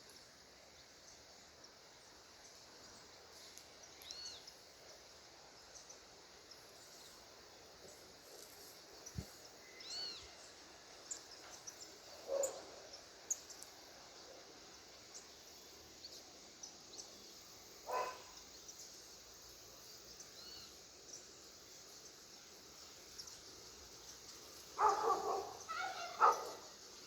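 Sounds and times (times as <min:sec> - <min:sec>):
whistled bird calls: 0:09.7 - 0:10.3
birds chirping: 0:17.9 - 0:18.8, 0:24.0 - 0:27.0.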